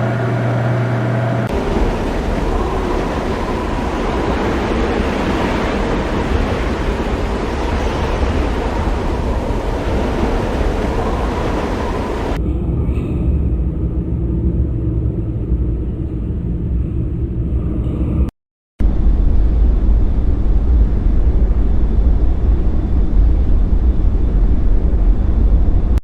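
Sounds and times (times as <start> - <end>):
low humming drone: 0.0 - 26.0
dense rushing noise: 1.5 - 12.4.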